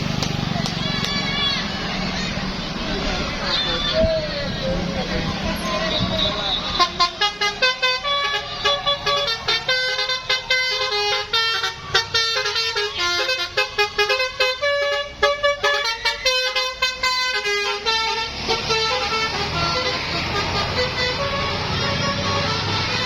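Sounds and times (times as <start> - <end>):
multi-tone bus air horn tune: 5.9 - 23.0.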